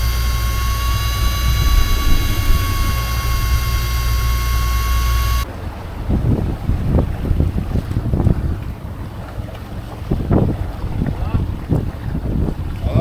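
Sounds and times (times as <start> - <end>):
boat engine rumbling with whine: 0.0 - 13.0
wind buffeting microphone: 0.0 - 13.0.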